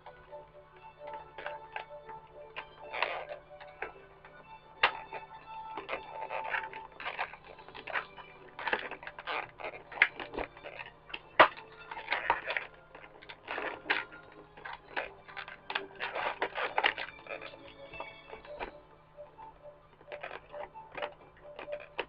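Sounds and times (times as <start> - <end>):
plastic packaging crinkling: 0.0 - 22.0
plastic snapping: 0.0 - 22.0.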